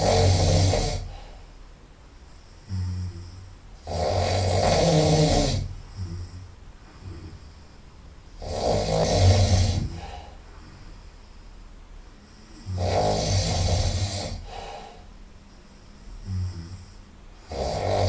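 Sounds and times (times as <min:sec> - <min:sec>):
person snoring loudly: 0:00.0 - 0:01.2, 0:02.6 - 0:07.4, 0:08.4 - 0:10.4, 0:12.5 - 0:15.0, 0:16.2 - 0:18.0
quiet breath: 0:00.8 - 0:03.9, 0:05.5 - 0:12.8, 0:13.4 - 0:17.6.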